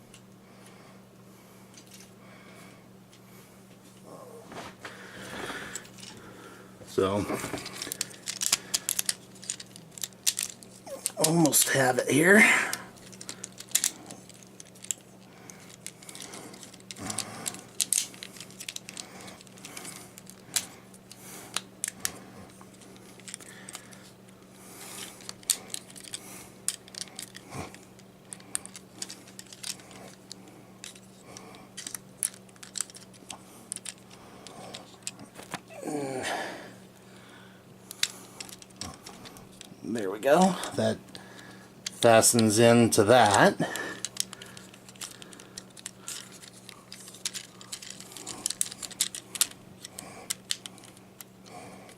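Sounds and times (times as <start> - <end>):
faint steady hum: 0.0 - 51.9
plastic parts clicking: 7.5 - 11.9, 13.0 - 24.0, 25.0 - 35.6, 37.9 - 39.7, 40.3 - 42.5, 43.1 - 51.3.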